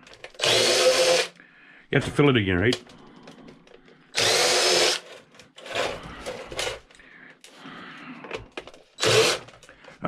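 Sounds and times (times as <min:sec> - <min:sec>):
drill clicks: 0:00.0 - 0:01.4, 0:04.1 - 0:05.9, 0:09.0 - 0:09.7
cordless drill whirring: 0:00.3 - 0:01.4, 0:04.1 - 0:06.0, 0:09.0 - 0:09.5.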